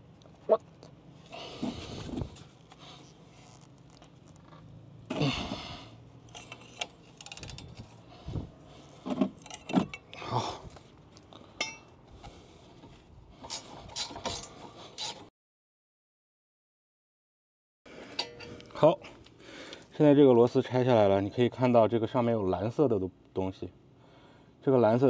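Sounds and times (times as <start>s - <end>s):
metal tools clinking: 6.3s - 7.9s, 9.4s - 10.2s.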